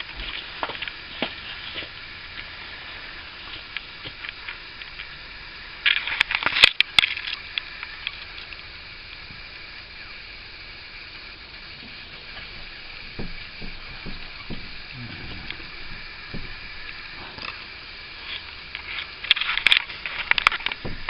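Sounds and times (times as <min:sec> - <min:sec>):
steady hiss: 0:00.0 - 0:21.0
hand tools tapping window glass: 0:12.4 - 0:17.0, 0:20.8 - 0:21.0.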